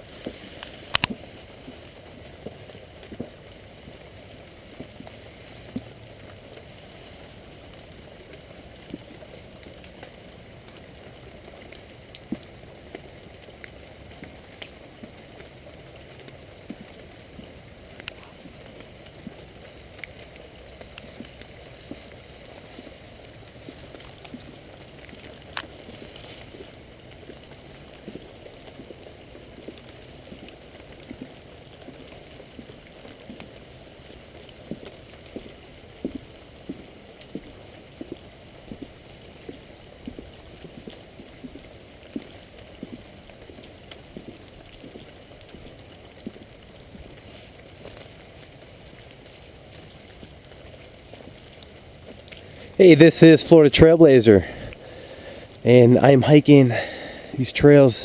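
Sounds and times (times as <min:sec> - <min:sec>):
raindrops tapping: 0:00.0 - 0:55.9, 0:56.5 - 0:58.0
rain hissing: 0:00.0 - 0:58.0.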